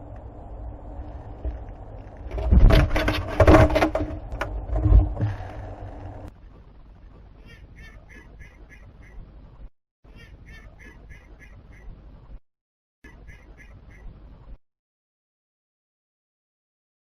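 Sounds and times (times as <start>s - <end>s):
bird short calls: 10.1s - 12.0s, 13.0s - 14.2s.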